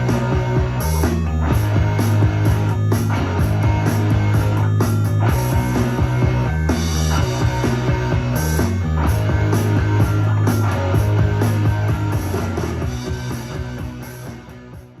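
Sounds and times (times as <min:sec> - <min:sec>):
rock music with guitar and bass: 0:00.0 - 0:15.0.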